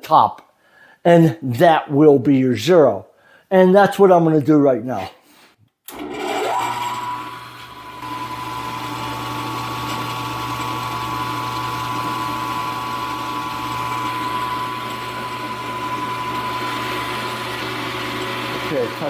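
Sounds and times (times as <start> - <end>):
spindle motor whining: 5.9 - 19.0.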